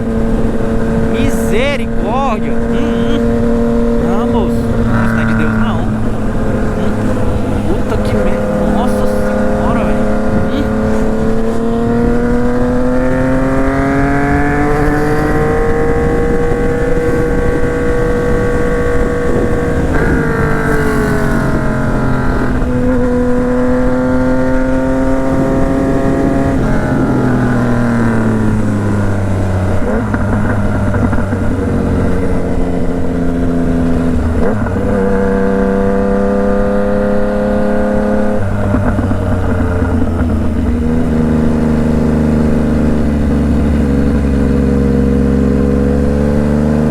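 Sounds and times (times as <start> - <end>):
motorcycle engine accelerating: 0.0 - 46.9
engine pitch dropping at gear changes: 0.8 - 23.7.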